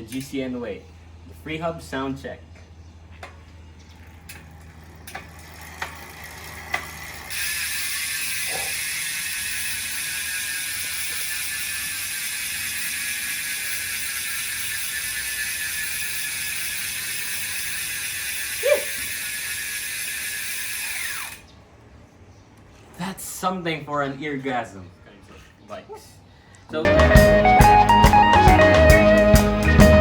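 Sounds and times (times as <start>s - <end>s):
bicycle freehub ratcheting: 4.0s - 21.5s.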